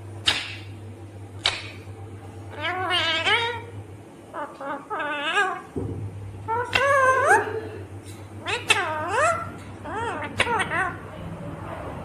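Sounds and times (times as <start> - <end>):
parakeet calling: 2.5 - 5.8, 6.4 - 11.4.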